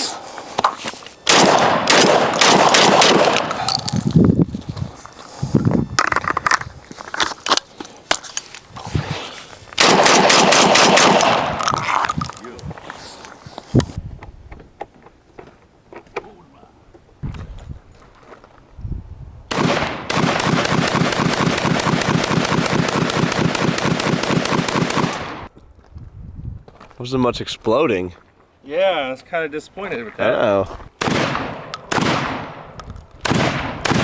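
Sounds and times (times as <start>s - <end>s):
shotgun shots: 1.3s - 3.7s, 9.8s - 11.6s, 19.5s - 25.5s, 31.0s - 34.0s.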